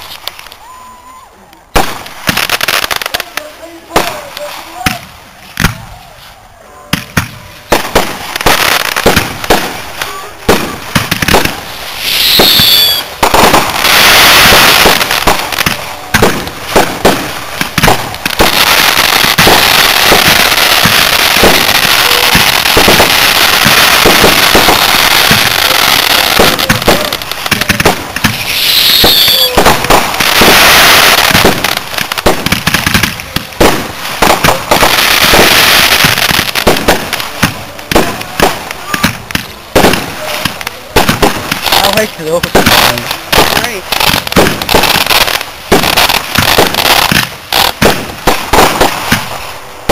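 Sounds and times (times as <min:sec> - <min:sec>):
firework crackling: 0:00.0 - 0:49.9
firework shells bursting: 0:06.9 - 0:49.9
gliding firework whistle: 0:11.9 - 0:15.0, 0:28.3 - 0:31.3.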